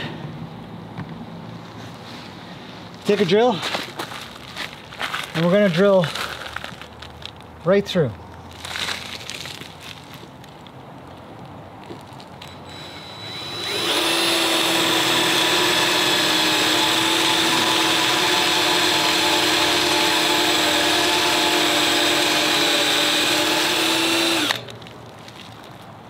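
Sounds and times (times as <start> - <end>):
electric power drill drilling metal: 12.4 - 24.7.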